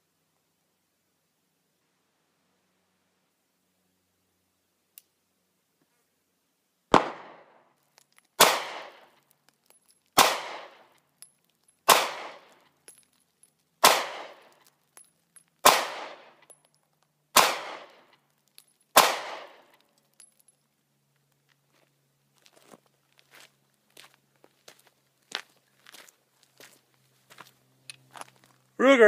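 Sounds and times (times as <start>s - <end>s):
pistol shots with echo: 6.9s - 7.5s, 8.4s - 9.0s, 10.2s - 10.8s, 11.9s - 12.6s, 13.8s - 14.5s, 15.6s - 16.4s, 17.4s - 18.0s, 19.0s - 19.7s.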